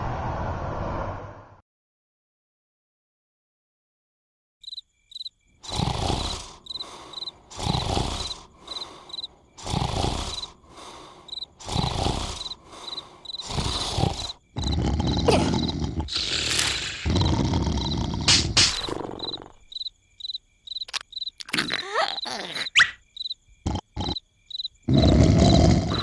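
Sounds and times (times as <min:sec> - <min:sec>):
cartoon snoring: 0:05.6 - 0:19.7, 0:21.4 - 0:23.0, 0:23.6 - 0:24.2, 0:24.8 - 0:26.0
high chirps: 0:17.8 - 0:23.4.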